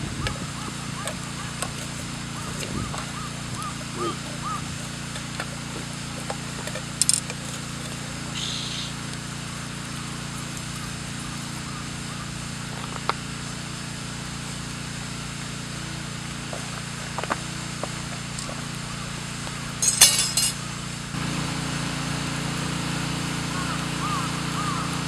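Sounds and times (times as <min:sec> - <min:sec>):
campfire burning: 0:00.4 - 0:15.2, 0:21.2 - 0:25.0.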